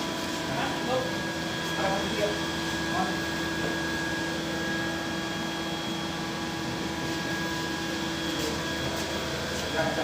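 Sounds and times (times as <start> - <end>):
machinery hum with whining tones: 0.0 - 10.0.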